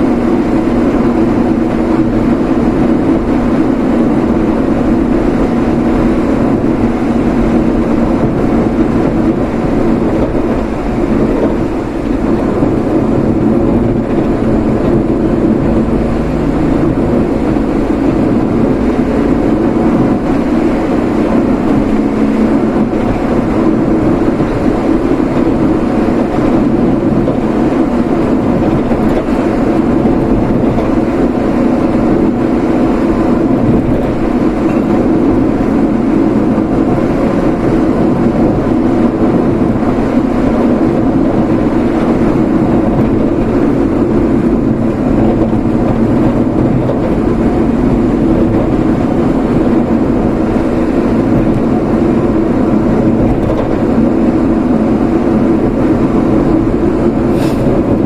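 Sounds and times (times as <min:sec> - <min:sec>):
vehicle road and engine noise: 0:00.0 - 0:58.0.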